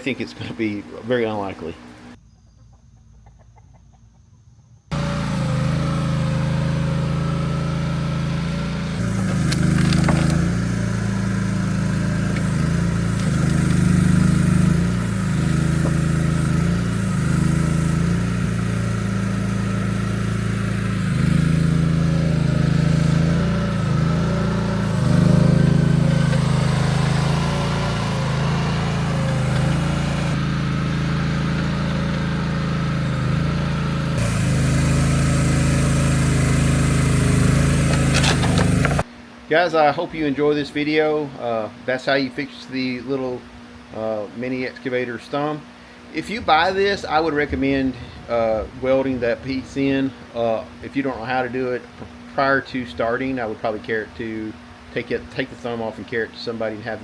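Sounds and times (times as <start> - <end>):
excavator engine running: 4.9 - 39.1.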